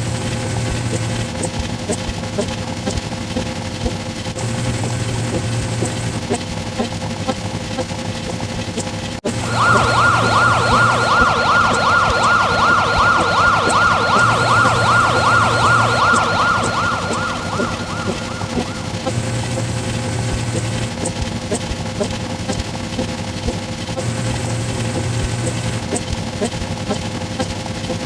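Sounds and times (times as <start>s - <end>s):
steady background drone: 0.0s - 28.0s
siren warbling: 9.3s - 20.8s.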